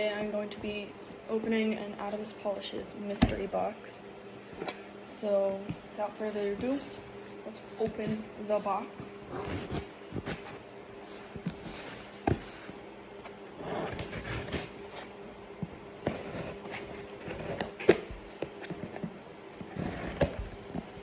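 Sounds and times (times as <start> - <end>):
faint steady hum: 0.0 - 21.0.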